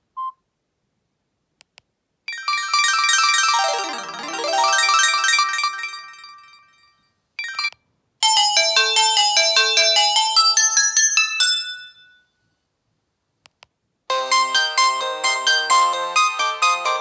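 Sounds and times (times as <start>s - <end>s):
phone ringtone melody: 2.3s - 11.9s.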